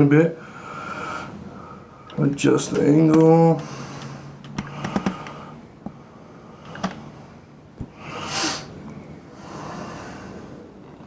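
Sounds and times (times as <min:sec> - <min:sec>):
sharp sniff through the nose: 0:08.1 - 0:08.7.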